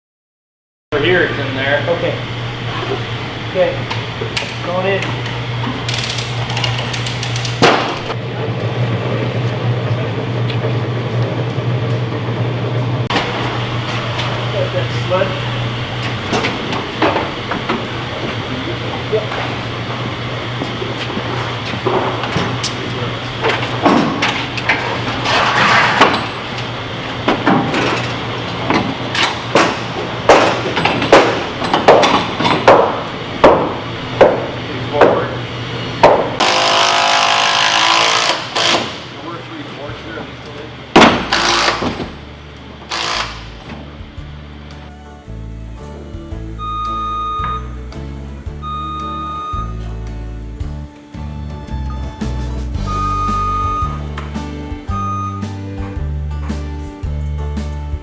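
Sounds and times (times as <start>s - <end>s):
steady low hum: 0.9s - 58.0s
knocks of wood and tools: 29.2s - 35.2s, 36.0s - 37.1s
sledgehammer striking wood: 41.0s - 42.0s.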